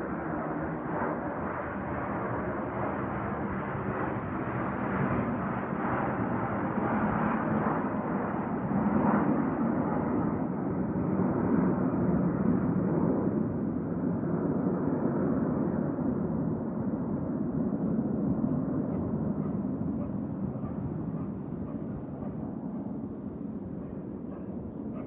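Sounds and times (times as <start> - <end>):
low jet rumble: 0.0 - 8.8.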